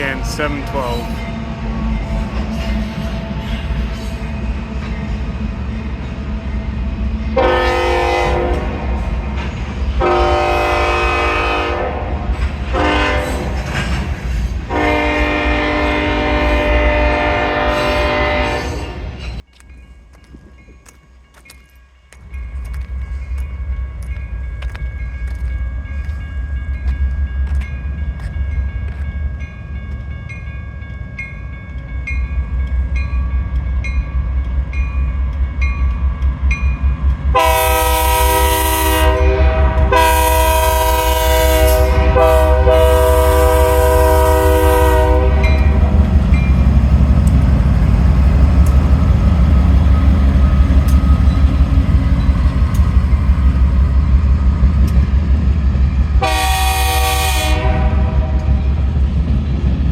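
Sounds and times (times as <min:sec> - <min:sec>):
locomotive air horn blasts: 0:07.4 - 0:09.0, 0:10.0 - 0:13.6, 0:14.7 - 0:19.1, 0:37.3 - 0:45.8, 0:56.2 - 0:58.6
locomotive engine rumble: 0:22.2 - 0:59.9.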